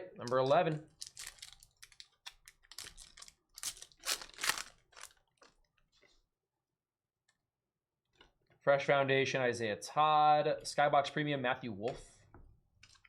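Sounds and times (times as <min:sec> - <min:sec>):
wrapper tearing and crinkling: 0:00.9 - 0:05.5.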